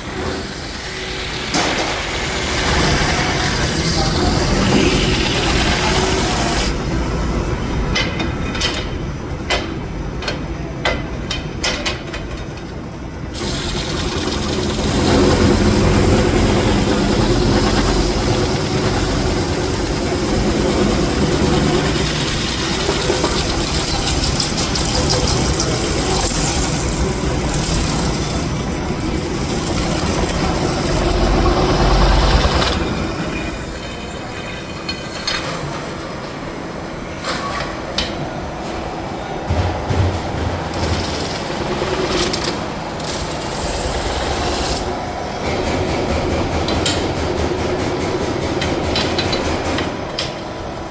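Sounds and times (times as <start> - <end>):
metal lathe running: 0.0 - 8.4, 13.2 - 35.4, 39.1 - 50.9.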